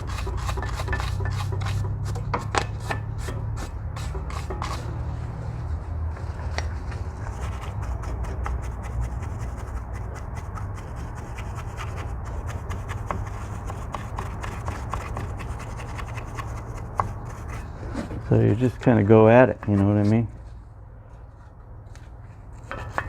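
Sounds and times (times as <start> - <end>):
wire brush scrubbing metal: 0.0 - 5.2.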